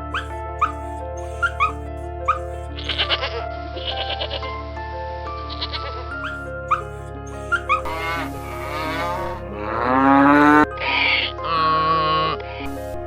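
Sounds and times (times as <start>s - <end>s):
light background music: 0.0s - 13.0s
cow mooing: 6.2s - 10.7s.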